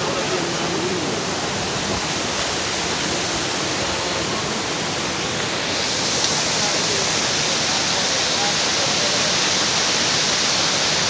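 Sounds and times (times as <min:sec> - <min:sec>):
waterfall roaring: 0:00.0 - 0:11.0.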